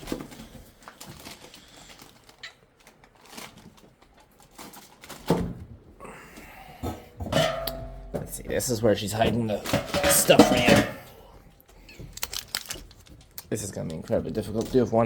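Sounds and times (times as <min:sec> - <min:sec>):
rustling: 0:00.0 - 0:05.3.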